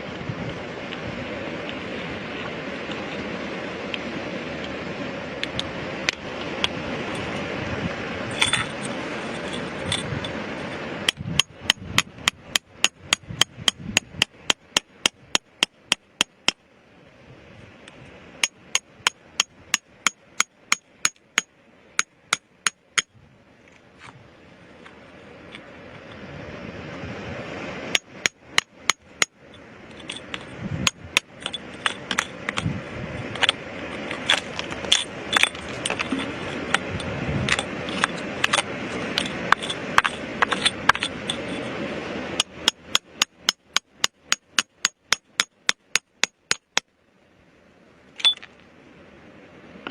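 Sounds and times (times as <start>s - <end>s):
steady rushing noise: 0.0s - 49.9s
hammer striking chisel on stone: 11.1s - 16.6s, 18.4s - 23.1s, 28.0s - 29.4s, 30.0s - 32.7s, 39.5s - 41.4s, 42.4s - 46.9s.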